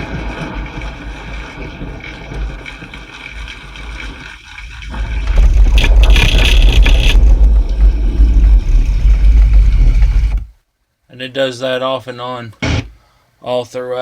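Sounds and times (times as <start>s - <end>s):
bass shaker buzzing and rattling: 0.0s - 10.6s.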